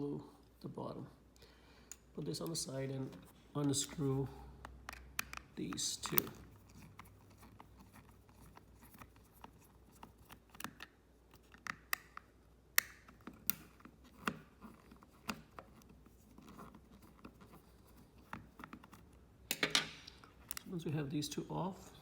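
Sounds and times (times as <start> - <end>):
screwdriver clicking and scratching: 4.8 - 19.2.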